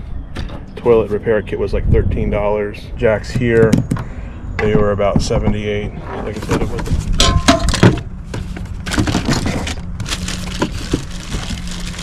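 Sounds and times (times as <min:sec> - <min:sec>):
packaging crackling and knocking: 0:06.4 - 0:12.0.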